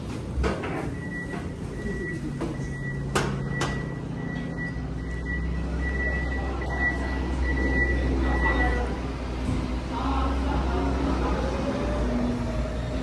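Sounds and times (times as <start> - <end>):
train carriage rumble: 0.0 - 13.0.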